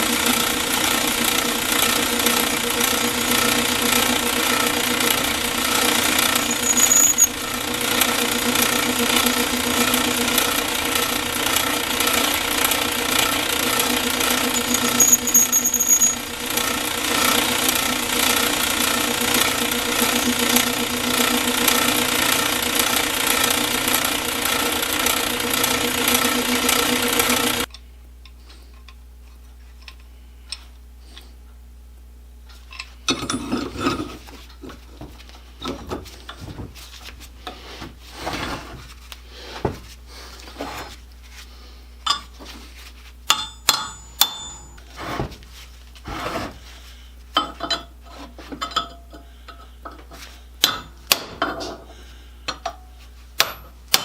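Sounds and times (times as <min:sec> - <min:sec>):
workshop machine running: 0:00.0 - 0:27.8, 0:32.7 - 0:47.9, 0:50.0 - 0:54.0
scraping strokes on metal: 0:01.8 - 0:10.7, 0:13.3 - 0:23.6.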